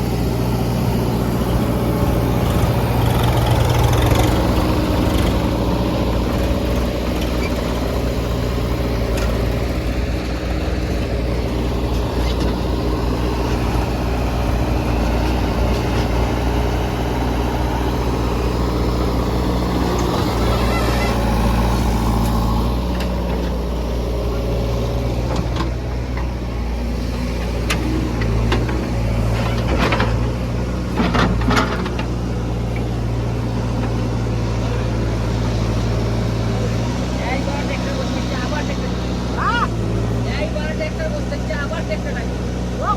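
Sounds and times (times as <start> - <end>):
heavy diesel engine running: 0.0 - 42.9.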